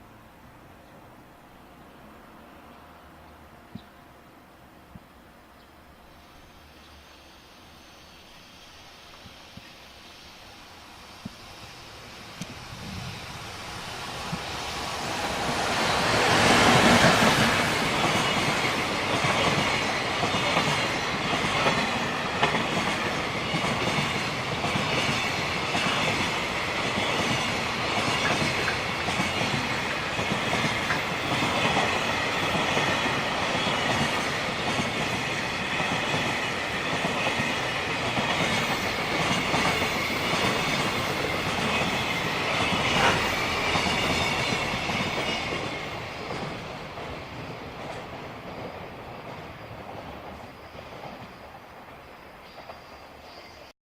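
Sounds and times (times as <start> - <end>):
freight train passing: 0.0 - 53.7.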